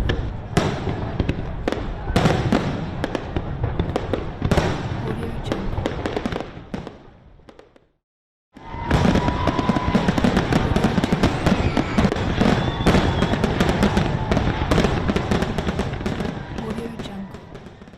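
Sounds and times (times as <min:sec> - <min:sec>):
fireworks crackling and banging: 0:00.0 - 0:07.9, 0:08.6 - 0:17.9
firework whistle: 0:08.6 - 0:16.6.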